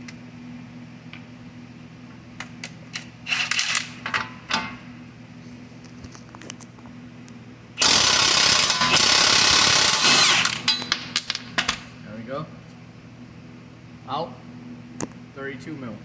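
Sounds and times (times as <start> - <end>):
impact wrench hammering: 7.8 - 11.9
metal tools clinking: 10.0 - 12.0.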